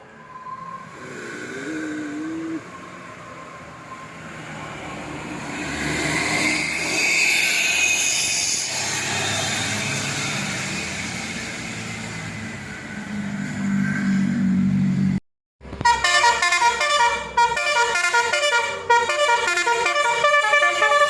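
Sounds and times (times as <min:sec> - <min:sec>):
vehicle passing by: 0:00.4 - 0:08.0.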